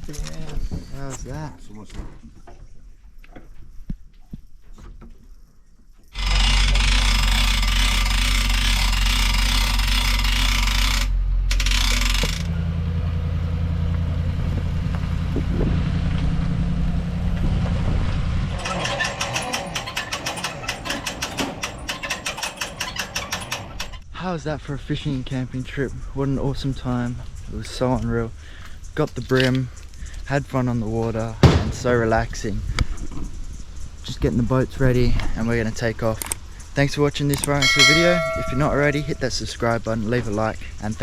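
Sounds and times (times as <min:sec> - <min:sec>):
vehicle engine running: 0:11.1 - 0:19.6.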